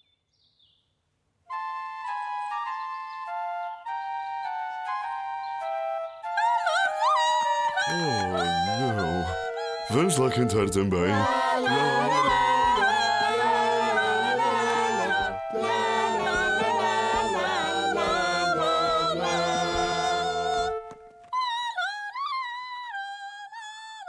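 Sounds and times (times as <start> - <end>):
instrumental backing music: 1.5 - 21.3
high voice singing alone: 6.7 - 21.0
cartoon characters singing: 7.7 - 21.0.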